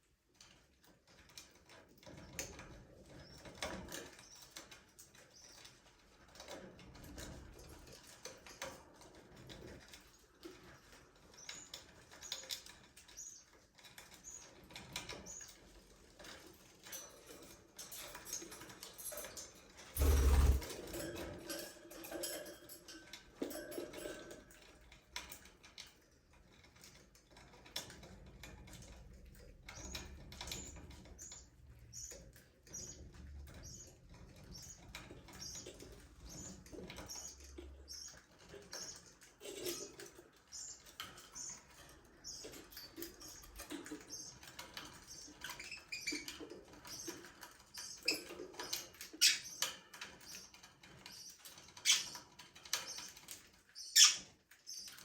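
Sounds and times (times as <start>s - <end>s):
budgerigars chirping and chattering: 20.0s - 20.6s, 52.8s - 55.0s.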